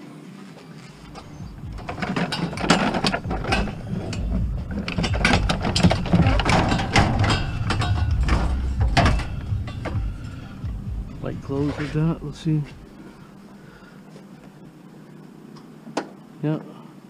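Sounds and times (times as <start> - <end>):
scrap metal clattering and scraping: 1.0 - 13.2.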